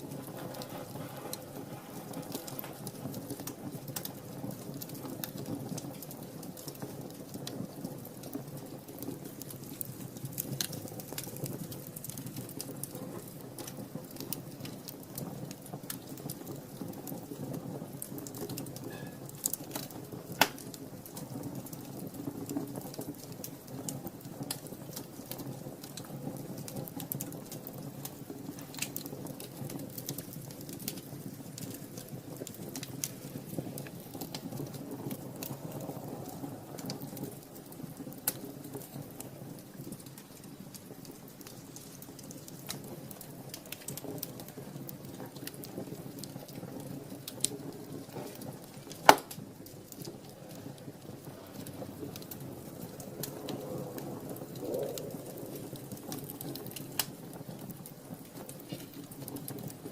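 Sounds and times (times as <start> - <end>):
wood fire crackling: 0.0 - 59.9
sharp loud pop: 20.4 - 20.6, 49.0 - 49.3.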